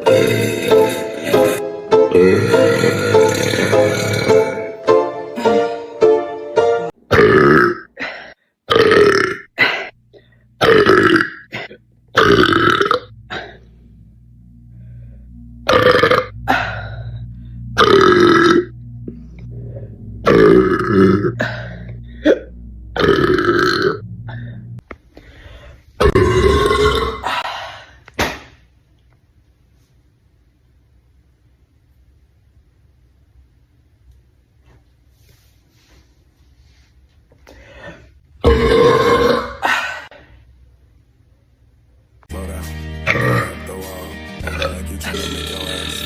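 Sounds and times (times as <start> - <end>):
woman belching: 0.0 - 4.6, 7.1 - 7.9, 8.7 - 9.5, 10.6 - 13.6, 15.6 - 16.6, 17.8 - 18.7, 20.2 - 24.4, 26.0 - 27.4, 38.4 - 39.8, 44.4 - 46.0
low steady hum: 7.0 - 42.3.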